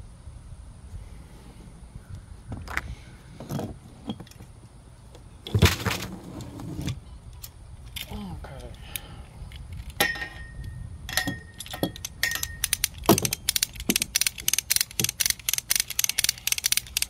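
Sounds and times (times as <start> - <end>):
metallic clanks: 10.0 - 15.2
winch ratchet clicking: 11.1 - 17.0.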